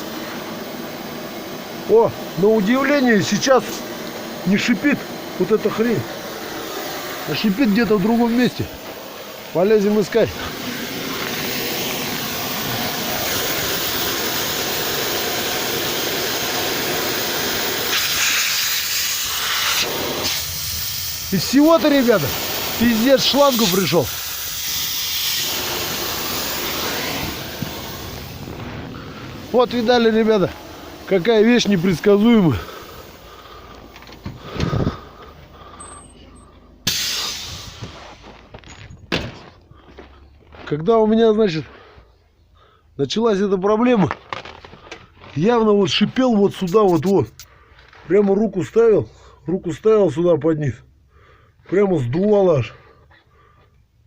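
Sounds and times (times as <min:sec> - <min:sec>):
compressed air hissing: 0:00.0 - 0:38.5, 0:45.8 - 0:47.7
low rumble: 0:27.1 - 0:29.9.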